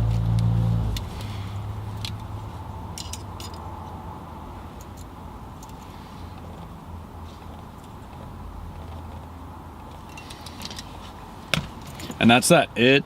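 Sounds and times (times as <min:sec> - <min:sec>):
low vehicle rumble: 0:00.0 - 0:12.0
light metallic clicks and clinks: 0:01.9 - 0:04.0, 0:04.7 - 0:11.0.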